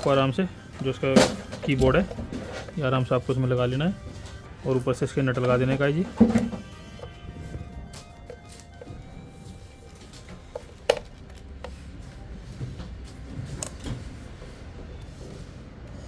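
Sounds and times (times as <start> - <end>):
plastic parts clicking and knocking: 0.8 - 3.2, 5.3 - 7.2, 9.9 - 11.8.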